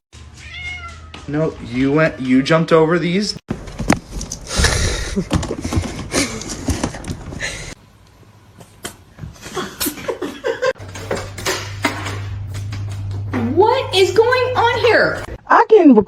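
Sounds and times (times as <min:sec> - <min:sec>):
person laughing: 0:04.5 - 0:06.8, 0:09.4 - 0:10.8
low hum: 0:10.8 - 0:15.5
voices: 0:13.4 - 0:16.0.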